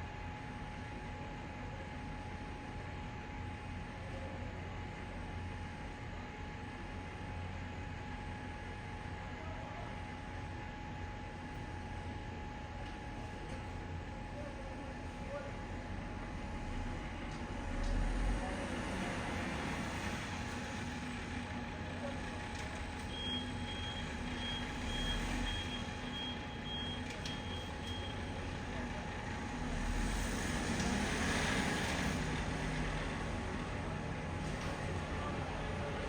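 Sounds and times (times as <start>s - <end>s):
heavy machine engine rumble: 12.4s - 36.0s.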